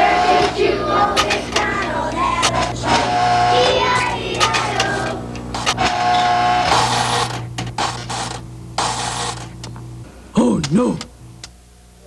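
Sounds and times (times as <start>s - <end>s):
toy train whirring: 0.0s - 9.7s
irregular clicks: 1.2s - 9.8s.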